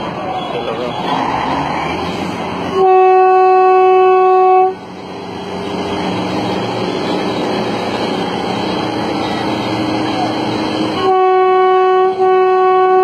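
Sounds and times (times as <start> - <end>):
horn blast: 2.7 - 4.8, 10.9 - 13.0.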